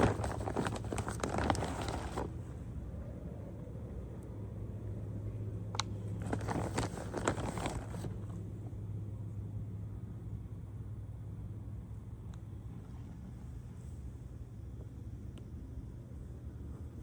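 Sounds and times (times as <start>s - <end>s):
rustling handling noise: 0.0s - 2.6s, 5.8s - 8.5s
steady low hum: 0.0s - 17.0s.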